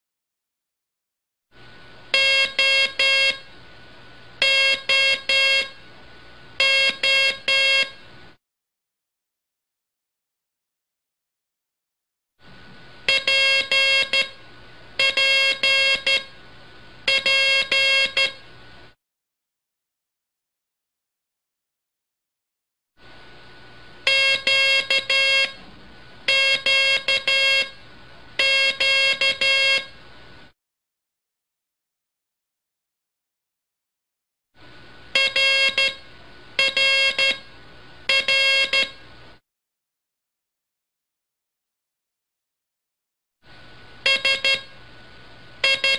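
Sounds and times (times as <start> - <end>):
morse code tone: 2.1 - 3.4, 4.4 - 5.8, 6.6 - 8.0, 13.1 - 14.4, 15.0 - 16.3, 17.1 - 18.4, 24.1 - 25.6, 26.3 - 27.8, 28.4 - 30.0, 35.2 - 37.5, 38.1 - 39.0, 44.0 - 44.8, 45.6 - 45.9
morse code beeps: 38.1 - 39.0, 44.1 - 44.7, 45.6 - 45.9.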